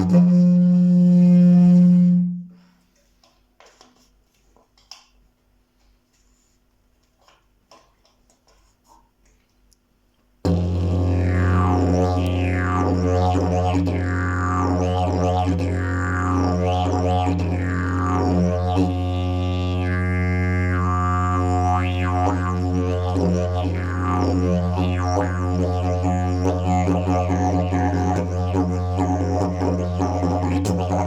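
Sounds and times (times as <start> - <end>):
didgeridoo drone: 10.5 - 31.0.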